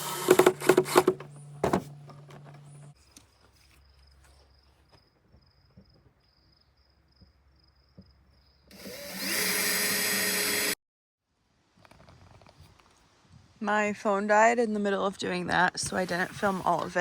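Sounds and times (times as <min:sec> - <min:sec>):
power tool running: 0:00.0 - 0:01.9, 0:08.7 - 0:10.8
insect chirping: 0:02.9 - 0:09.5.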